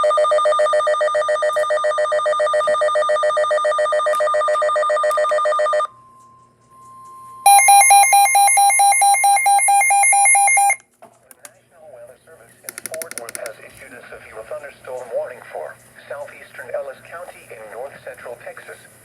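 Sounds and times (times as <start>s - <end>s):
pulsing alarm tone: 0.0s - 10.8s.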